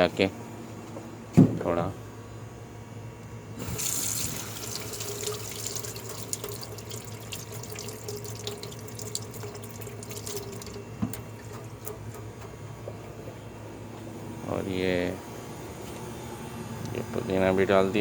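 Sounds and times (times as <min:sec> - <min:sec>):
kitchen tap running: 0:03.6 - 0:12.5.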